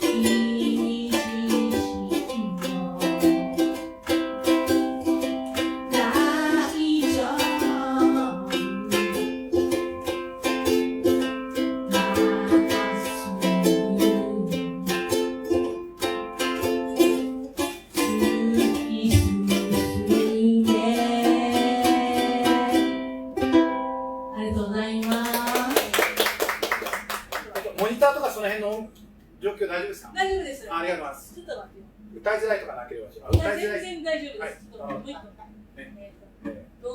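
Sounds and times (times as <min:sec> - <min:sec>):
ukulele strumming: 0:00.0 - 0:24.7.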